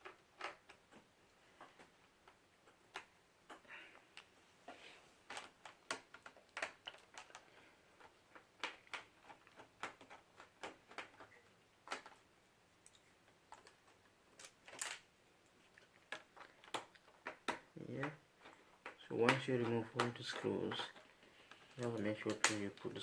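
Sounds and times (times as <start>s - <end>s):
light scratching of screws and plastic: 4.2s - 12.3s, 12.9s - 23.0s.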